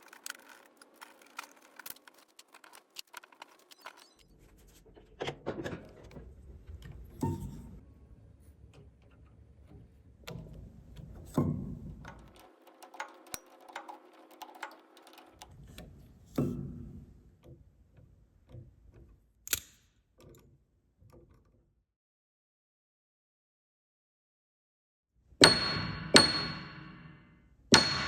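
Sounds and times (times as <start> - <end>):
clicks and knocks of piano mechanism: 8.6 - 19.3.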